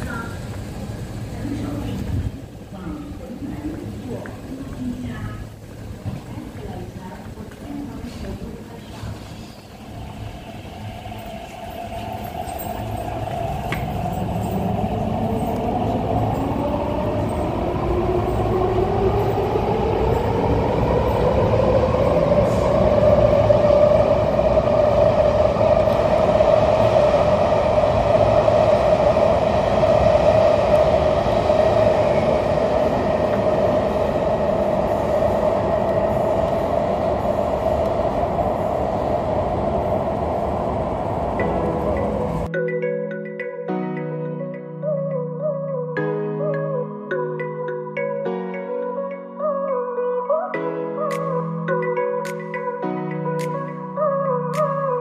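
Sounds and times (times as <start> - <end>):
rumble of running train: 0.0 - 42.5.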